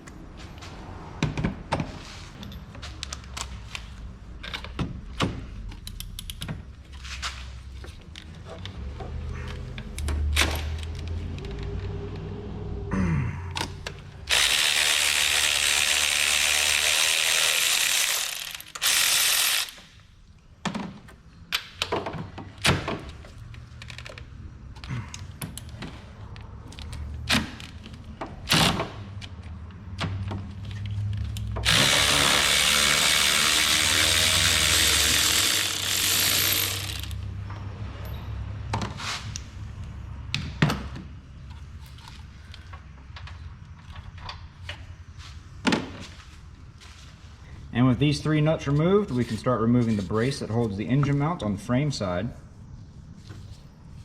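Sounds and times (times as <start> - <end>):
power tool spinning nuts: 14.2 - 19.8, 31.6 - 37.2.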